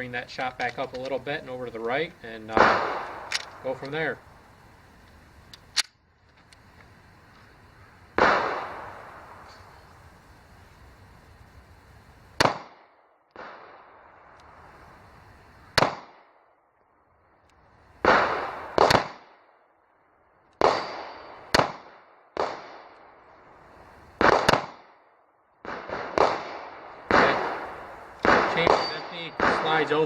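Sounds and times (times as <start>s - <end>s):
pistol shots: 2.5s - 3.8s, 8.2s - 9.4s, 12.4s - 13.9s, 15.8s - 16.3s, 18.0s - 19.4s, 20.6s - 23.0s, 24.2s - 24.9s, 25.6s - 30.0s
echoing gunshots: 2.5s - 4.2s, 8.2s - 9.5s, 12.4s - 14.1s, 15.8s - 16.4s, 18.0s - 19.5s, 20.6s - 23.2s, 24.2s - 25.0s, 25.6s - 30.0s.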